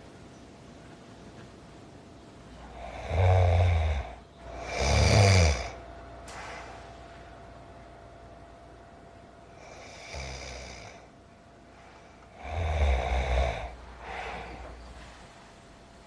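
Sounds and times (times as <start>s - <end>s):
person snoring: 2.7s - 5.8s, 9.6s - 11.1s, 12.3s - 14.7s.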